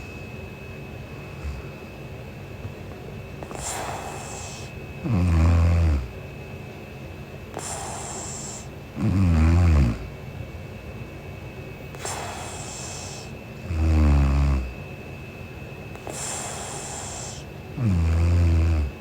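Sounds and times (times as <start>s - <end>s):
soft airy breath: 1.0s - 2.1s, 3.3s - 6.2s, 7.4s - 9.1s, 11.8s - 13.6s, 15.8s - 17.8s
woman snoring: 1.3s - 1.7s, 3.4s - 6.2s, 7.6s - 10.1s, 12.0s - 14.8s, 16.0s - 19.0s.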